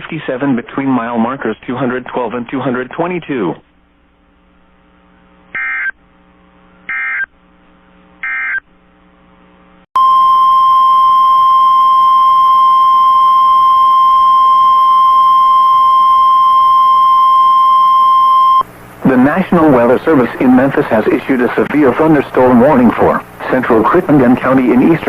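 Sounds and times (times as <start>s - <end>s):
faint mains hum: 0.0s - 25.0s
steady warning alarm tone: 5.6s - 6.0s, 6.9s - 7.3s, 8.2s - 8.6s.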